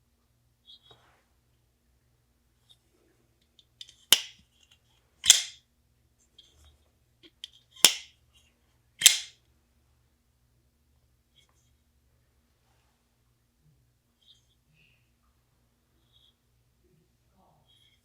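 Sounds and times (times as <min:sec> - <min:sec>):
folding knife snapping open and shut: 0:03.8 - 0:04.4, 0:05.2 - 0:05.6, 0:07.8 - 0:08.1, 0:09.0 - 0:09.3.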